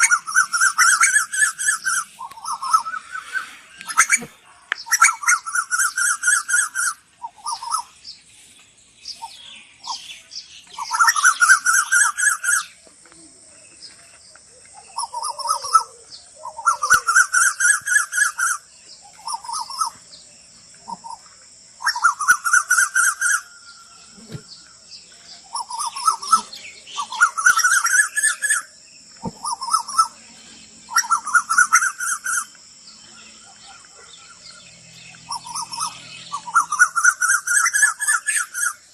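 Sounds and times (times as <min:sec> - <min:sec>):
bird calling rapid notes: 0:00.0 - 0:08.0.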